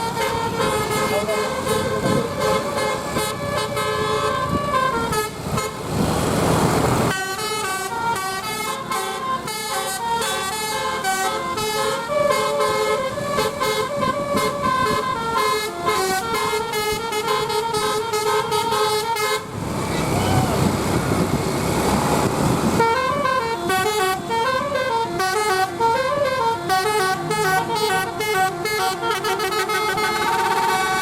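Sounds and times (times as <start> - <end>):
musical air horn tune: 0.0 - 5.8, 7.1 - 19.5, 22.8 - 31.0
rushing noise: 19.4 - 23.5.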